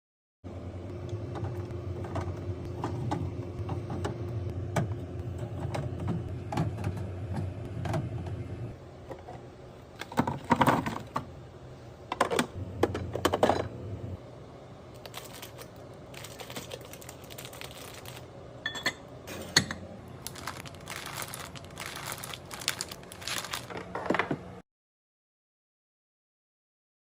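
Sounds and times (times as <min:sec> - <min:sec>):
food packaging crinkling: 0:15.0 - 0:18.3, 0:20.2 - 0:24.0.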